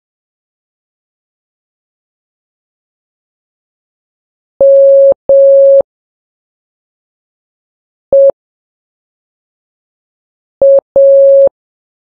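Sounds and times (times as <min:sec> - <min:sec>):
morse code beep: 0:04.6 - 0:05.8, 0:10.6 - 0:11.5.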